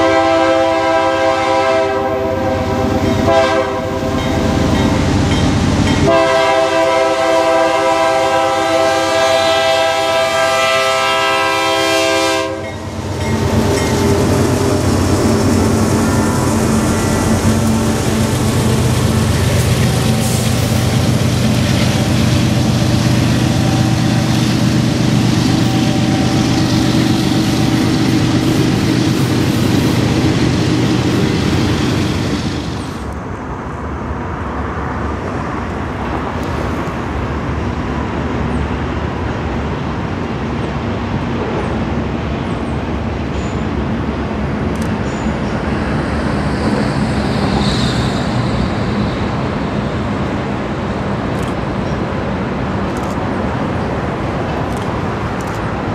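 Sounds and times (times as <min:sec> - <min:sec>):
diesel locomotives running: 0:00.0 - 0:55.9
freight cars rolling past: 0:12.4 - 0:39.1.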